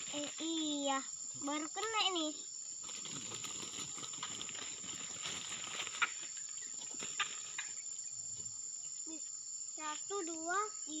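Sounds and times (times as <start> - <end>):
crickets chirping: 0.0 - 11.0
rustling: 2.8 - 7.8.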